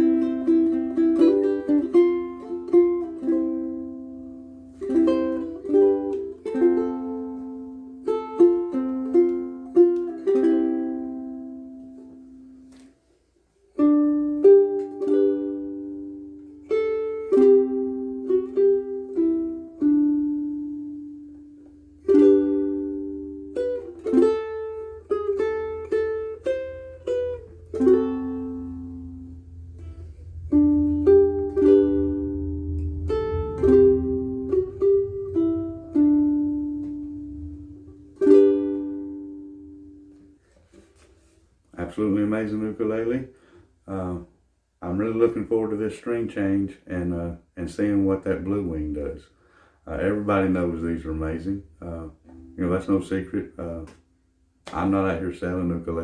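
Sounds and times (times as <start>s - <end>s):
ukulele playing: 0.0s - 43.1s, 51.9s - 53.0s.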